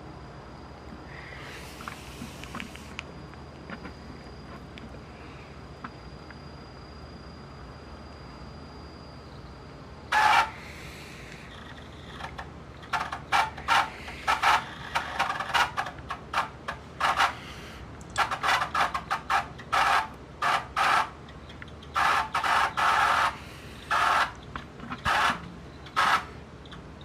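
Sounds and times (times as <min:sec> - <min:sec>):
steady low hiss: 0:00.0 - 0:18.5.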